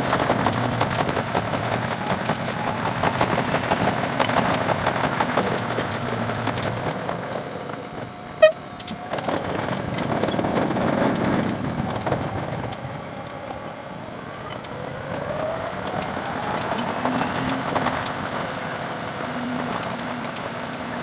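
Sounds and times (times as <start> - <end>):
sped-up train clatter: 0.0 - 21.0.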